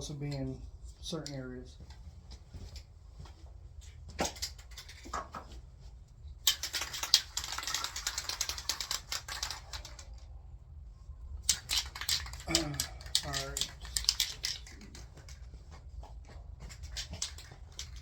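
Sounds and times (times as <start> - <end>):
spray can ball rattling: 6.4 - 10.2, 11.4 - 15.5, 16.6 - 18.0.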